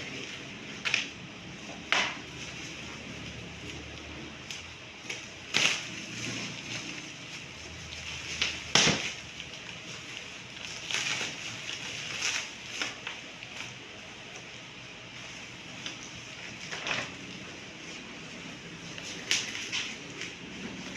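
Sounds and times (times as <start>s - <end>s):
sharp packaging crackles: 2.3s - 14.0s
packaging rustling: 5.1s - 14.1s.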